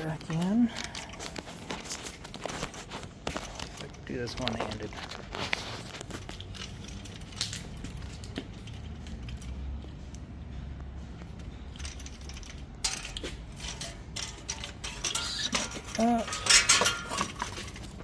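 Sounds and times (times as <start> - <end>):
light metallic clicks and clinks: 6.2 - 10.3, 11.1 - 18.0.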